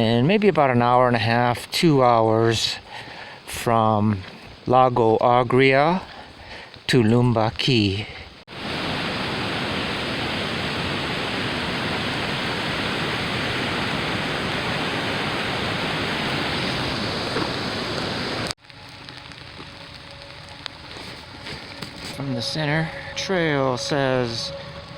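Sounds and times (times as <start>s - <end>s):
falling water rushing: 8.5s - 24.9s.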